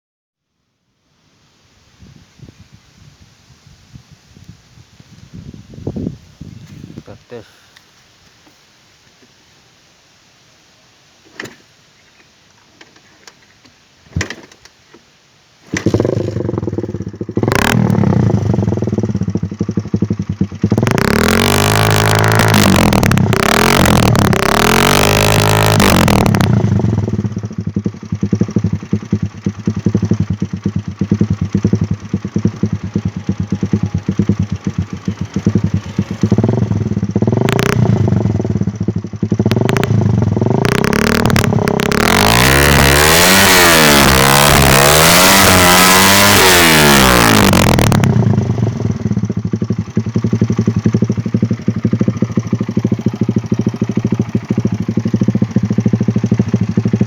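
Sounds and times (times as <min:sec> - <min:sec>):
motorcycle engine idling and revving: 0:04.4 - 0:09.3, 0:11.2 - 0:57.0.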